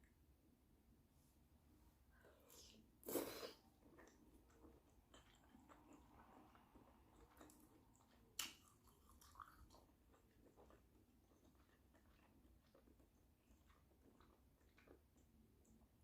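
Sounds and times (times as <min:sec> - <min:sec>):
person chewing: 0:02.2 - 0:15.9.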